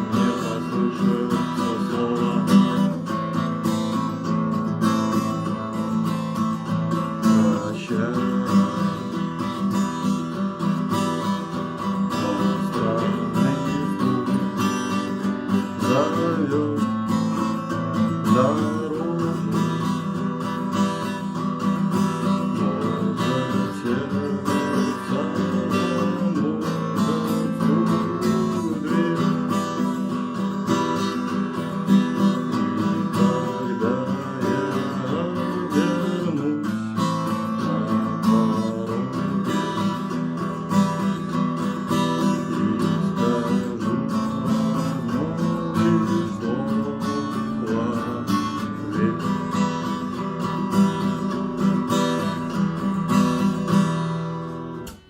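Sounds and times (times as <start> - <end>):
acoustic guitar strumming chords: 0.0 - 55.0
sliding guitar melody: 0.0 - 55.0.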